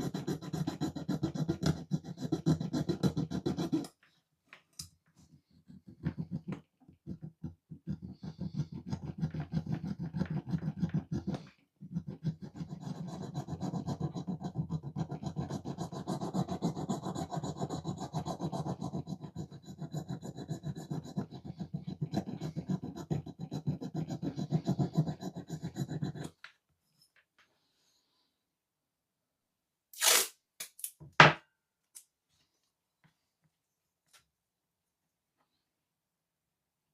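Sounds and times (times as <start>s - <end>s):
metal being filed by hand: 0.0s - 4.0s, 5.6s - 26.4s.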